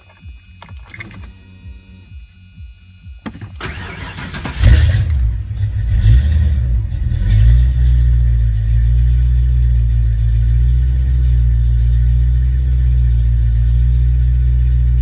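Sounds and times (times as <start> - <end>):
car engine cranking and starting: 0.0 - 15.0
car engine fast idle: 3.1 - 15.0.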